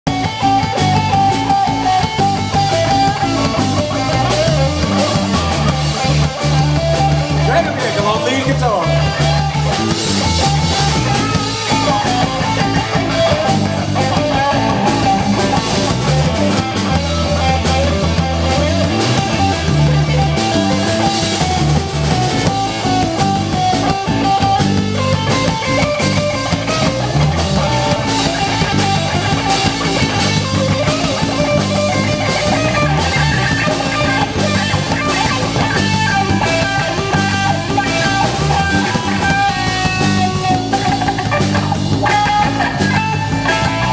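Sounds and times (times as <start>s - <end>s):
bass guitar: 0.0s - 43.9s
drum kit: 0.1s - 43.9s
electric guitar solo: 0.1s - 43.9s.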